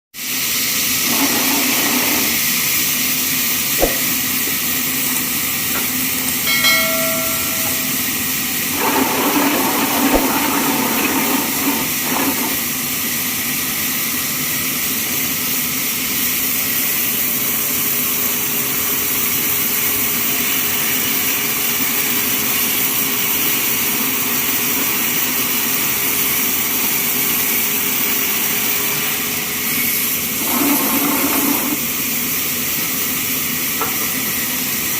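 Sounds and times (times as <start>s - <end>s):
sawmill machinery hissing: 0.2s - 34.9s.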